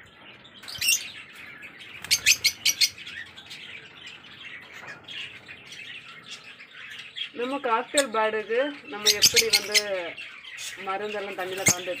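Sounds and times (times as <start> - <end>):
lovebirds chirping: 0.0 - 12.0.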